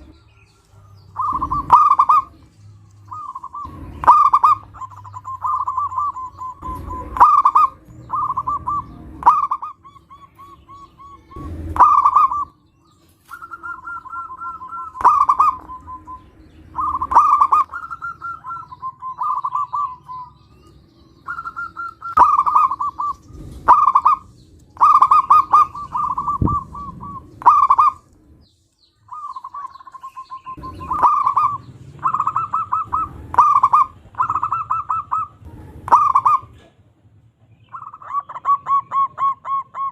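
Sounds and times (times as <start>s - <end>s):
doves cooing: 0.0s - 28.4s, 29.0s - 36.8s, 37.6s - 39.9s.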